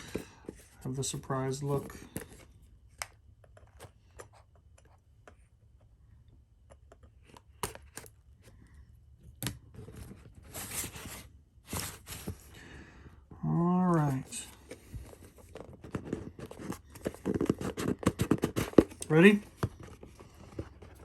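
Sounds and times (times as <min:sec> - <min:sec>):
packaging rustling: 0:13.8 - 0:21.0
box packaging clicks and taps: 0:14.6 - 0:21.0.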